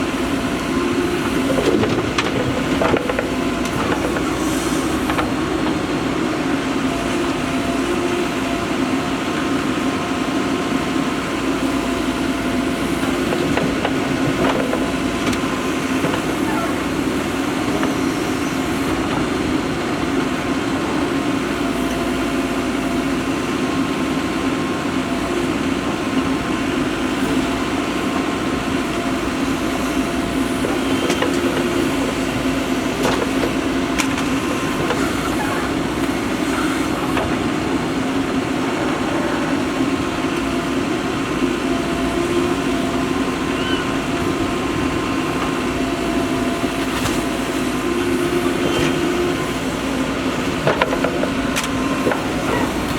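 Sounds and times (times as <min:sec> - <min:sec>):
backhoe diesel engine running: 0:00.0 - 0:52.9.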